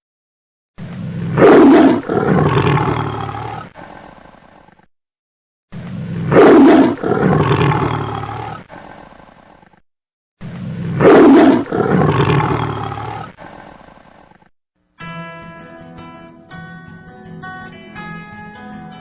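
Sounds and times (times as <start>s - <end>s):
lion roaring: 1.0s - 4.2s, 5.8s - 9.1s, 10.5s - 14.0s.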